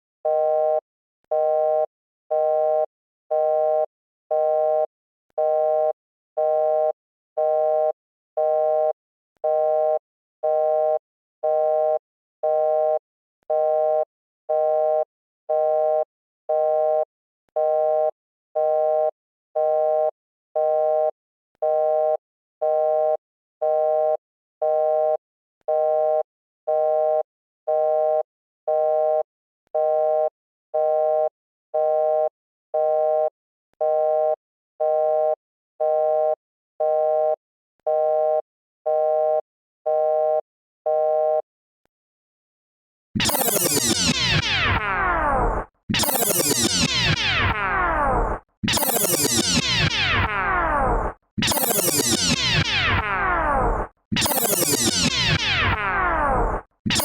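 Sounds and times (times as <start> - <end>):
repeating electronic beep tone: 43.2 - 57.0.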